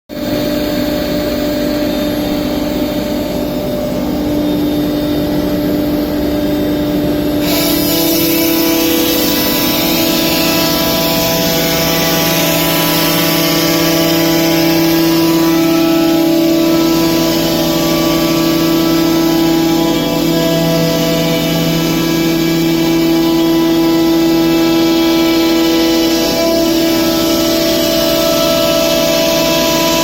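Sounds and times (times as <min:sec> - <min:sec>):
router spindle whine: 0:00.1 - 0:30.0
hissy cutting noise: 0:07.4 - 0:30.0.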